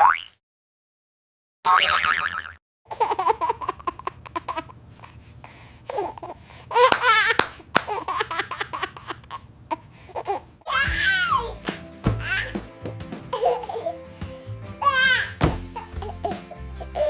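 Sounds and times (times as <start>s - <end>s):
baby laughing and crying: 2.9s - 4.8s, 5.9s - 17.0s.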